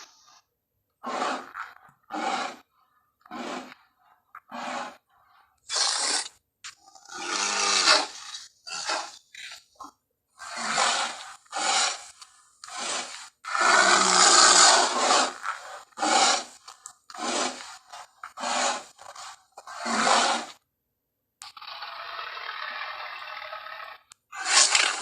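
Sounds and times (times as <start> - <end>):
gorilla roars and grunts: 1.0 - 3.8, 6.9 - 9.6, 10.4 - 17.7.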